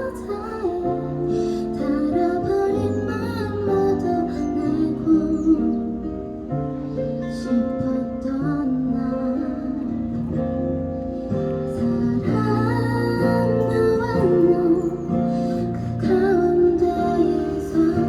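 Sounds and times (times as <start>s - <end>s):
woman singing: 0.0s - 6.4s, 7.2s - 10.6s, 11.6s - 18.0s
acoustic guitar and keyboard ballad: 0.0s - 18.0s.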